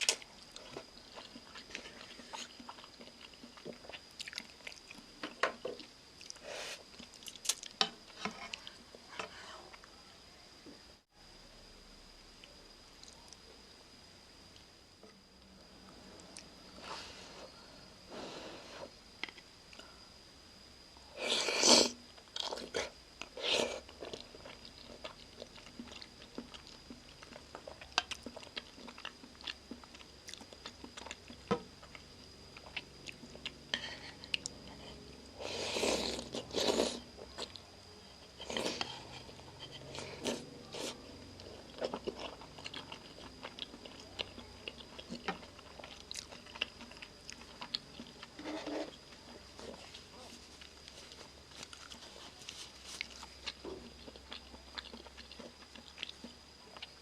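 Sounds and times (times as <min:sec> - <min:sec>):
chewing with wet mouth clicks: 0:24.0 - 0:33.6, 0:41.4 - 0:50.0, 0:53.0 - 0:57.0.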